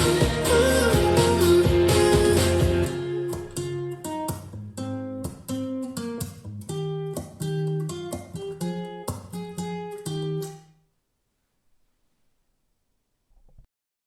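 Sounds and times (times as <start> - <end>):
plucked guitar through speakers: 0.0 - 10.7.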